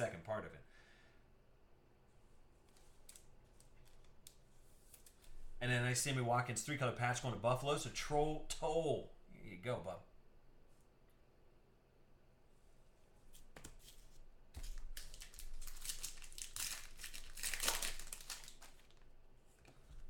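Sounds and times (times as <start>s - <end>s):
plastic wrapper tearing and crinkling: 14.6s - 19.2s.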